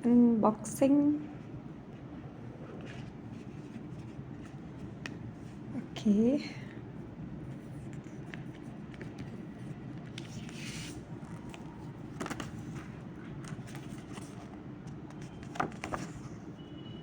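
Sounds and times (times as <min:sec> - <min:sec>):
steady low hum: 0:00.0 - 0:16.7
cards and paper rustling: 0:07.6 - 0:16.4.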